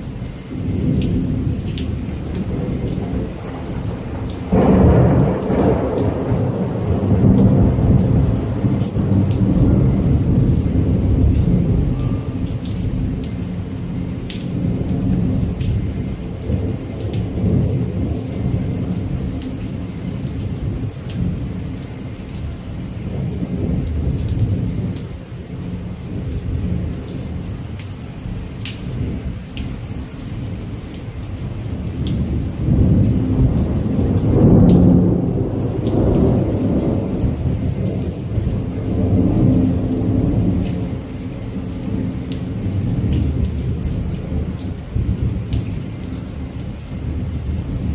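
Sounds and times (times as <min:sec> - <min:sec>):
raindrops ticking: 0:00.0 - 0:47.9
steady rain: 0:00.0 - 0:47.9
rolling thunder: 0:00.5 - 0:21.6, 0:31.4 - 0:41.1.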